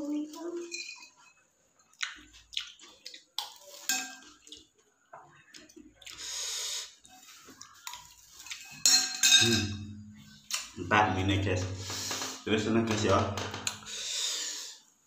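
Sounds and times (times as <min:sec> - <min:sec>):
cutlery clatter: 0:00.7 - 0:01.4, 0:03.8 - 0:04.4, 0:08.4 - 0:09.8
cutlery clinking on a plate: 0:03.8 - 0:04.4, 0:08.4 - 0:09.8.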